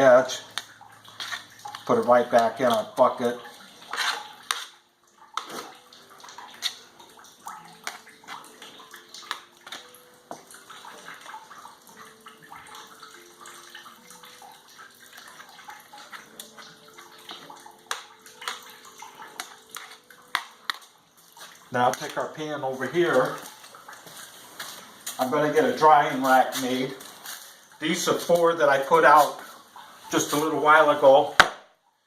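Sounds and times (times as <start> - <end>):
wet pulp sloshing and scraping: 0.5 - 4.8, 5.4 - 9.9, 14.8 - 30.7.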